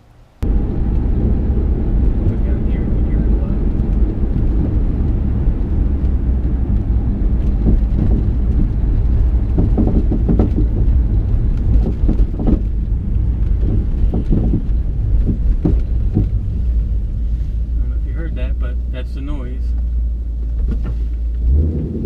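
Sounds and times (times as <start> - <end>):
road and engine rumble: 0.0 - 22.0
suspension knocks: 0.4 - 17.2.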